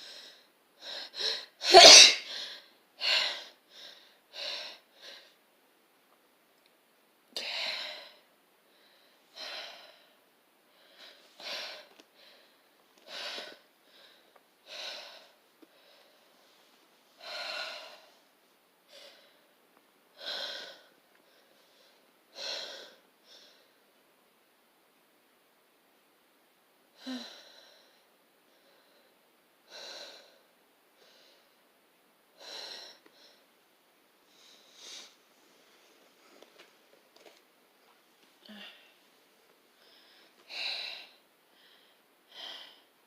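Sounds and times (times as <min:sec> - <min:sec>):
person sneezing: 0:01.6 - 0:02.3.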